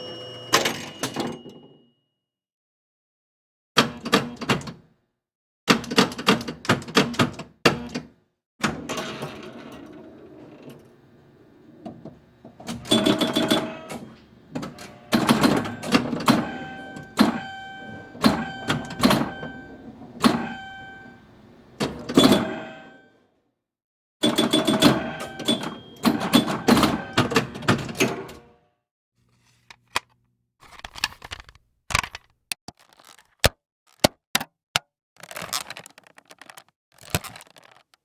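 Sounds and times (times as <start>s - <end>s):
office machine clicking and clacking: 12.0s - 22.9s, 24.2s - 28.4s
mechanical rattling: 35.2s - 38.0s.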